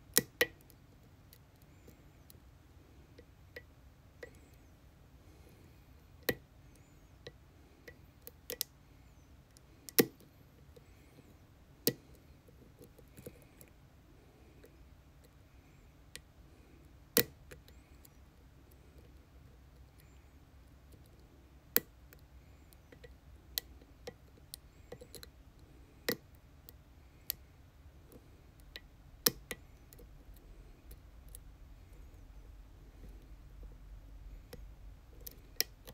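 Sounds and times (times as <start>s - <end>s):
lock pick clicks and taps: 0.1s - 1.7s, 6.2s - 6.4s, 9.9s - 10.3s, 26.1s - 26.3s.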